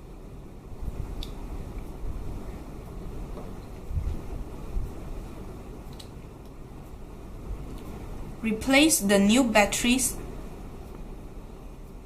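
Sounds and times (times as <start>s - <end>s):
low rumbling microphone noise: 0.0s - 5.9s.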